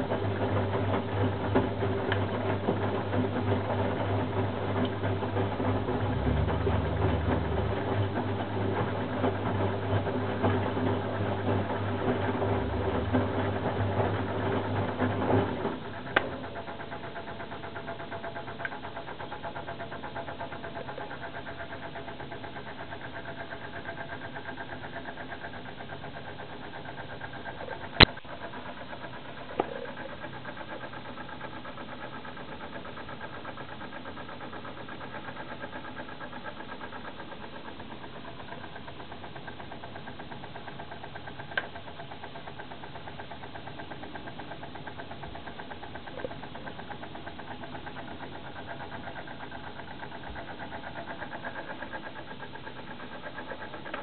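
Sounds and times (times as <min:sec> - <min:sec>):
washing machine hum: 0:00.0 - 0:54.0.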